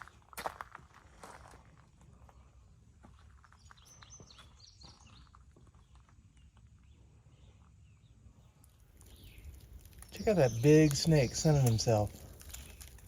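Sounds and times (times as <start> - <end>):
faint bird chirps: 3.1 - 12.9.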